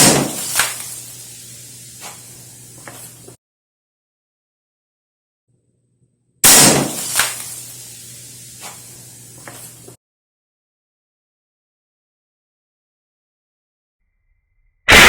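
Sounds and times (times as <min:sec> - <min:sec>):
air rifle shot crack: 0:00.0 - 0:00.8, 0:06.4 - 0:07.4.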